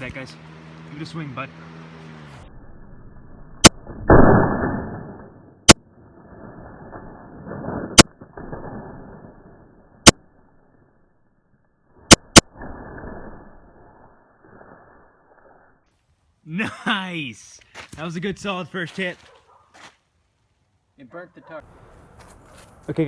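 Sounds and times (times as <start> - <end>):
crunching rumbles: 0.0 - 16.2.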